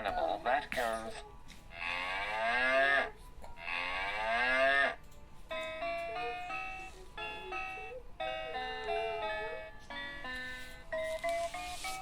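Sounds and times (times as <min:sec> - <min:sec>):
cow mooing: 0:01.8 - 0:05.0.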